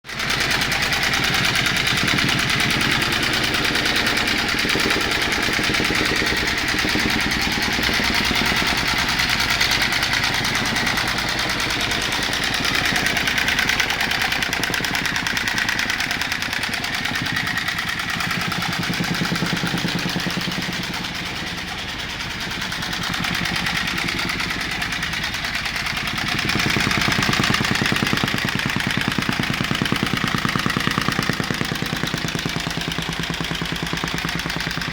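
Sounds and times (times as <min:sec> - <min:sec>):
construction machinery engine chattering: 0:00.0 - 0:34.9.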